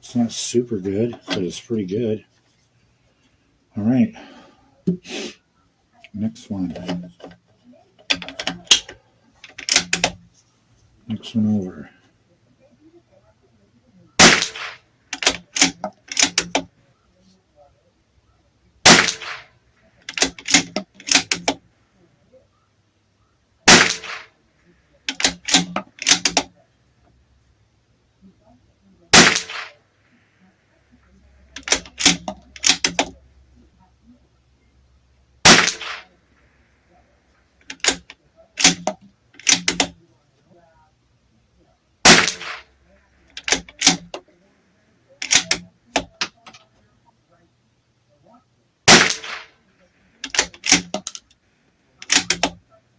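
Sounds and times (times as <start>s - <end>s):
rifle bolt metallic clicks: 8.1s - 10.2s, 14.2s - 16.7s, 20.0s - 21.6s, 25.1s - 26.5s, 31.6s - 33.2s, 35.5s - 36.1s, 37.6s - 40.0s, 43.4s - 44.2s, 45.2s - 46.6s, 50.2s - 51.3s, 52.0s - 52.6s
rifle shots: 14.2s - 16.6s, 18.8s - 19.5s, 20.1s - 21.6s, 23.6s - 24.3s, 25.1s - 26.5s, 29.1s - 29.8s, 31.6s - 33.0s, 35.4s - 36.1s, 42.0s - 42.7s, 48.9s - 49.6s.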